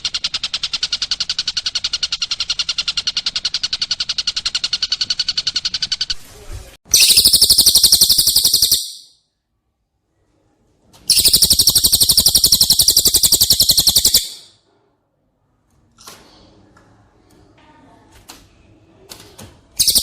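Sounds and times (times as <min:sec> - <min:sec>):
songbird rattling trill: 0:06.9 - 0:09.1, 0:11.1 - 0:14.5, 0:19.8 - 0:20.0.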